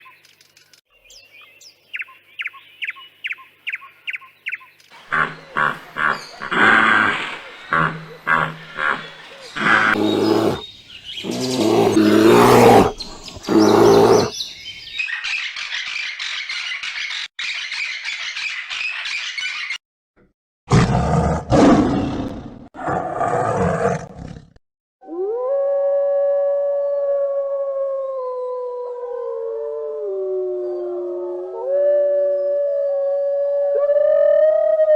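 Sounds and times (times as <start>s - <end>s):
deep rough animal roars: 5.1s - 10.6s, 11.2s - 14.3s, 20.7s - 24.6s.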